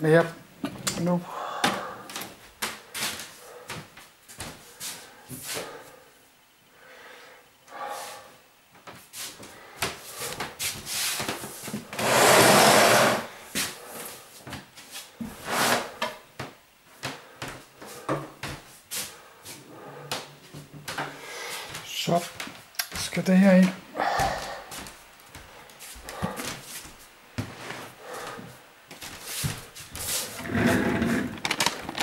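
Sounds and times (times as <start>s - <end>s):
boxes and bags knocking and bumping: 30.4s - 32.0s.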